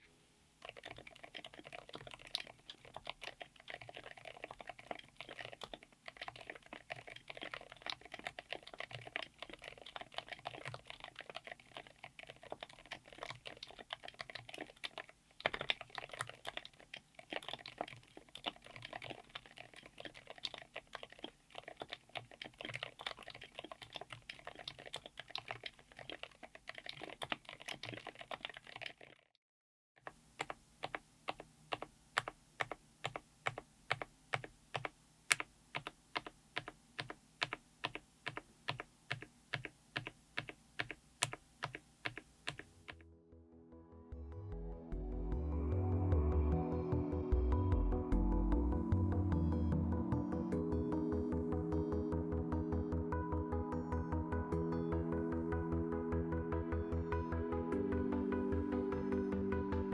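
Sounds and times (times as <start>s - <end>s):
fast keyboard typing: 0.6s - 29.3s, 30.0s - 43.0s.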